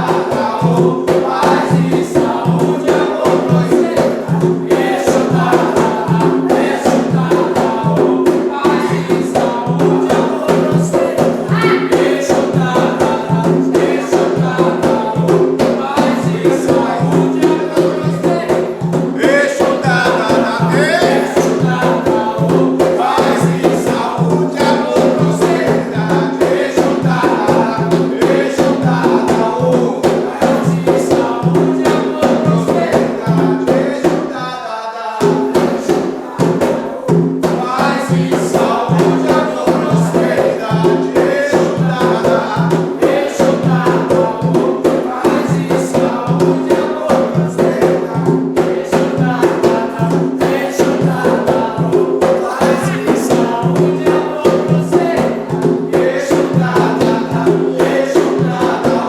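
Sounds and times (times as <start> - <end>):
drums beating steady rhythm: 0.0 - 34.5, 35.2 - 59.0
group of voices singing: 0.0 - 59.0.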